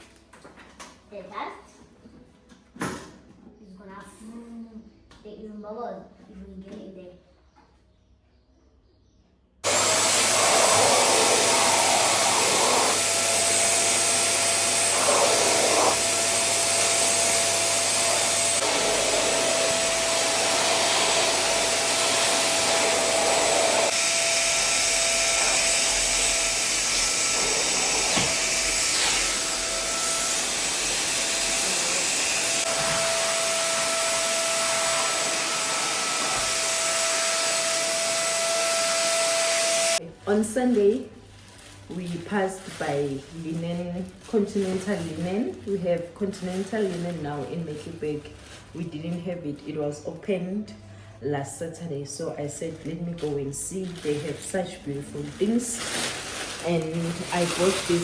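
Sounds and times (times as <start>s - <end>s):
vacuum cleaner running: 9.6s - 40.0s, 55.0s - 58.0s.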